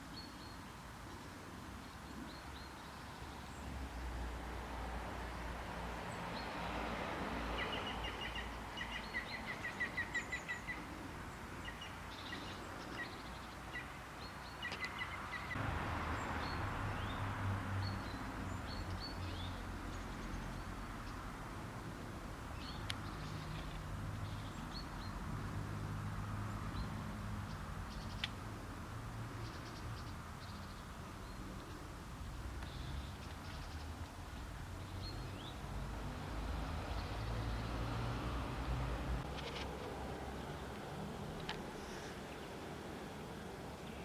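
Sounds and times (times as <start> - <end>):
birds chirping: 7.4 - 21.2, 29.3 - 35.8, 36.6 - 44.0.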